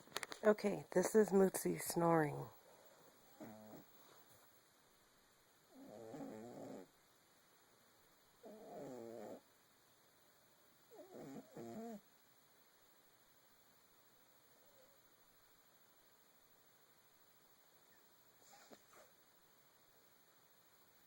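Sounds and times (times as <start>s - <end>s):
pet snoring: 3.3s - 3.9s, 5.7s - 6.9s, 8.4s - 9.5s, 10.9s - 12.0s.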